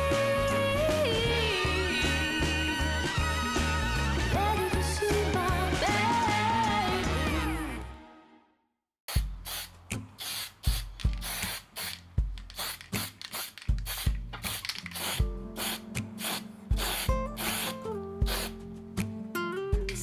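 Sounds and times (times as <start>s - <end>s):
background music with steady beat: 9.1s - 20.0s.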